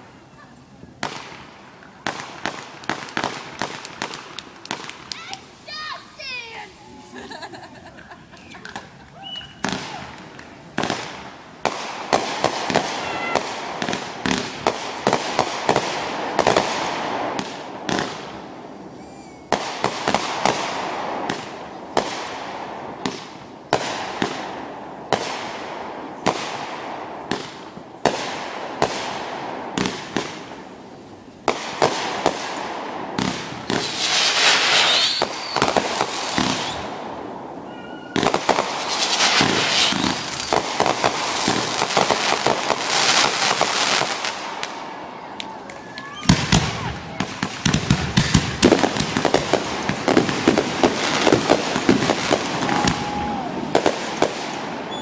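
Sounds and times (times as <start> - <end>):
dense firework crackling: 0.0 - 55.0
firework shells bursting: 1.0 - 6.3, 31.5 - 44.8, 45.6 - 55.0.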